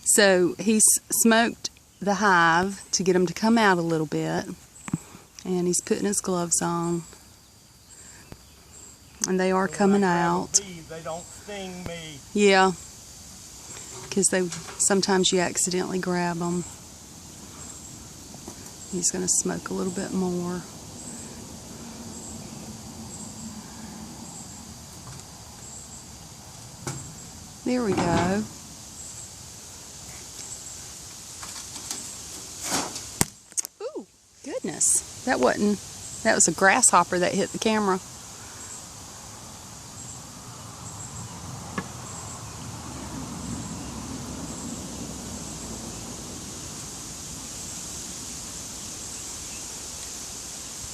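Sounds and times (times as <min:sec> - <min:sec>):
high insect chirps: 0:00.0 - 0:50.9
bees buzzing: 0:05.0 - 0:33.2.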